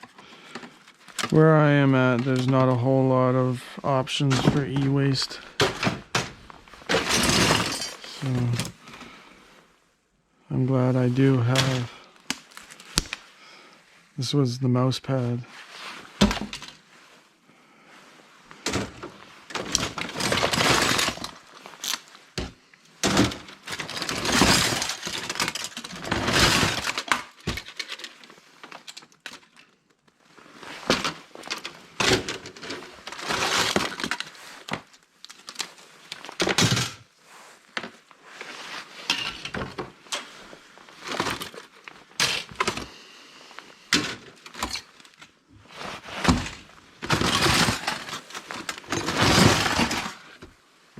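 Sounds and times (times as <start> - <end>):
pieces clattering: 4.2 - 8.8, 18.7 - 29.9, 30.8 - 37.0, 39.0 - 40.3, 41.0 - 42.9, 46.2 - 50.3.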